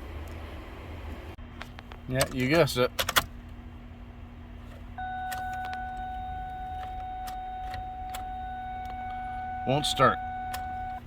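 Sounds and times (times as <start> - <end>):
ignition key clicks: 1.9 - 3.3, 5.0 - 11.0
electronic warning tone: 5.0 - 11.0.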